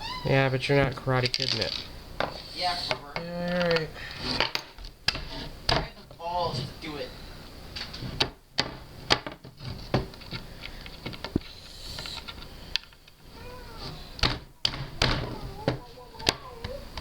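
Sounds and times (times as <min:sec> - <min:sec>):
hand tool rubbing on grip tape: 0:01.2 - 0:04.5, 0:09.6 - 0:14.2.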